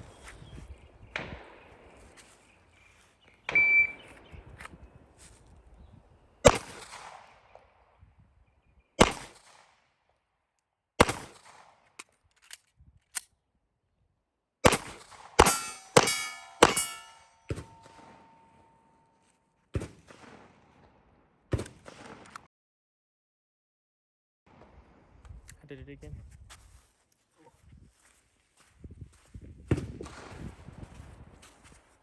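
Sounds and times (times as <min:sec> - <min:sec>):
pistol shots: 0:06.4 - 0:07.3, 0:09.0 - 0:09.7, 0:11.0 - 0:11.7, 0:14.6 - 0:18.6
metallic ringing: 0:15.4 - 0:19.0.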